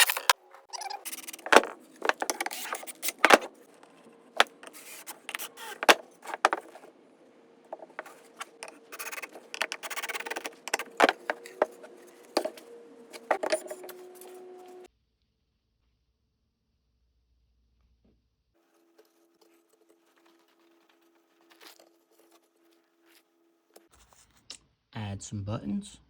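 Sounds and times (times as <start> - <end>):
wooden pieces knocking and scraping: 0.0 - 0.4, 1.1 - 3.6, 4.4 - 6.9, 7.7 - 14.4.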